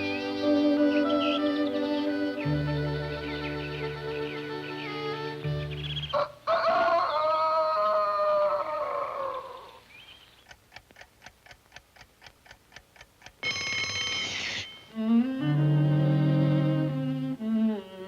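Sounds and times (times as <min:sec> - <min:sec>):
wavering musical phrase: 0:00.0 - 0:06.1, 0:13.4 - 0:18.0
clock ticking quickly: 0:10.4 - 0:15.0
alarm clock bell ringing: 0:13.4 - 0:15.0.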